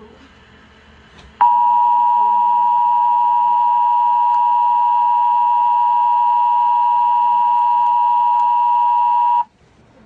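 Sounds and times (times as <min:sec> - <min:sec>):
two-tone electronic alert tone: 0:01.4 - 0:09.4.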